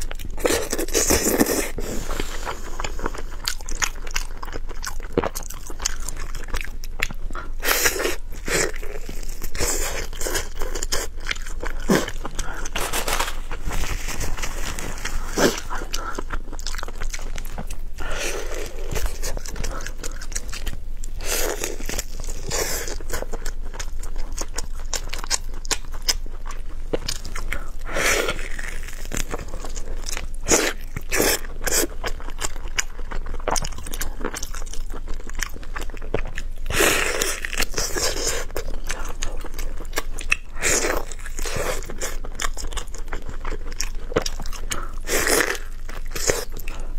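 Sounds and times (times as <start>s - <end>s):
person chewing food: 0.0s - 46.9s.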